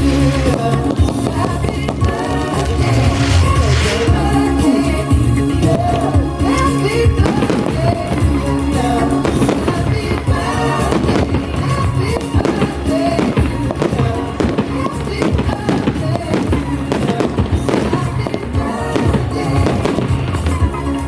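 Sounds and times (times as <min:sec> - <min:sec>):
fireworks bangs and crackles: 0:00.0 - 0:21.0
music playing: 0:00.0 - 0:21.0.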